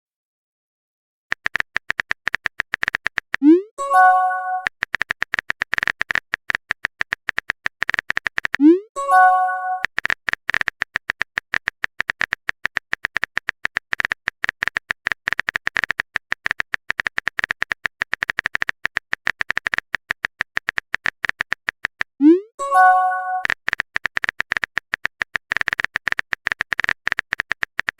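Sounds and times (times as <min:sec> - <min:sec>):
phone keyboard typing clicks: 0:01.3 - 0:27.9
text message alert chime: 0:03.4 - 0:04.7, 0:08.6 - 0:09.8, 0:22.2 - 0:23.5.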